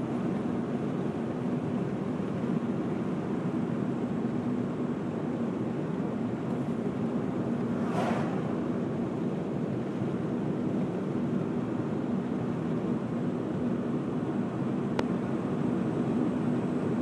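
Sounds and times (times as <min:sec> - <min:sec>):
car driving on highway: 0:00.0 - 0:17.0
brief rushing hiss: 0:07.6 - 0:09.2.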